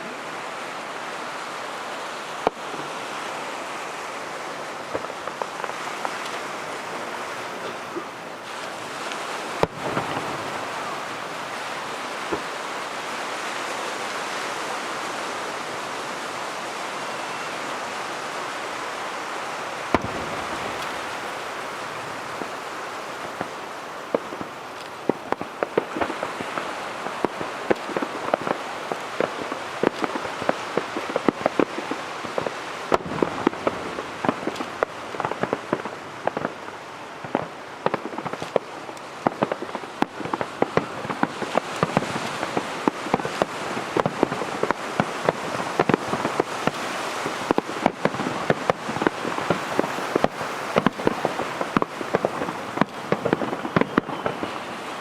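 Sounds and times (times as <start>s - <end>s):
fireworks crackling: 0.0s - 55.0s
steady hiss: 0.0s - 55.0s
firework bang: 9.6s - 11.6s, 19.9s - 22.5s, 30.8s - 36.5s.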